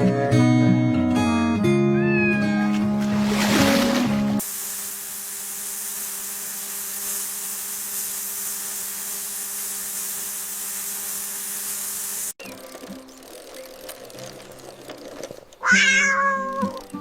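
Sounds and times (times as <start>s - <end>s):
small motor whirring hiss: 4.4s - 12.4s.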